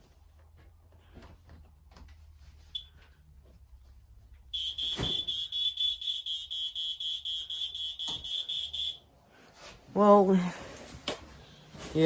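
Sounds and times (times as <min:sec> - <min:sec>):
smoke detector alarm: 0:04.5 - 0:09.1.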